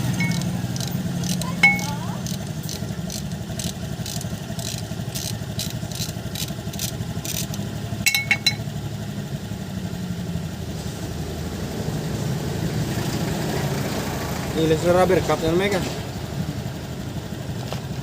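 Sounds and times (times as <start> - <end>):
metallic clinks: 0.0 - 8.7
engine idling: 0.0 - 18.0.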